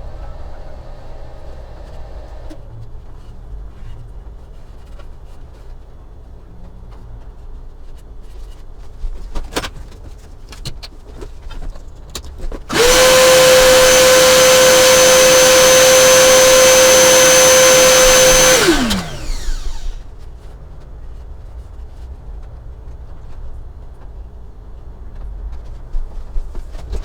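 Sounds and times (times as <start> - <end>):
router spindle motor whine: 0.0 - 2.6, 12.7 - 20.0.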